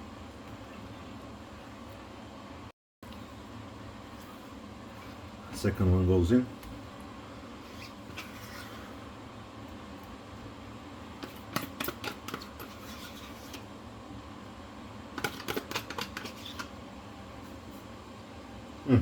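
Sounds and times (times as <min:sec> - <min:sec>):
utensil scraping a container: 0:07.6 - 0:08.9, 0:11.2 - 0:13.6, 0:15.2 - 0:16.7.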